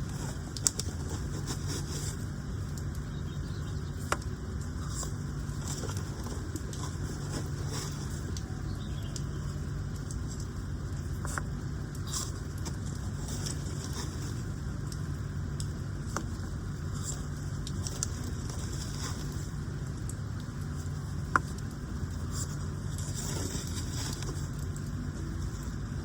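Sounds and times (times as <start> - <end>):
low motor hum: 0.0 - 26.0.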